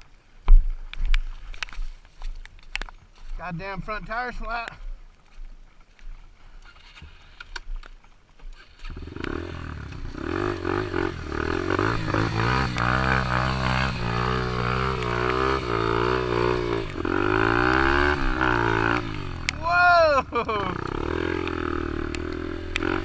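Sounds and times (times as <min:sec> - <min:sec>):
dirt bike engine revving: 0:08.6 - 0:23.0.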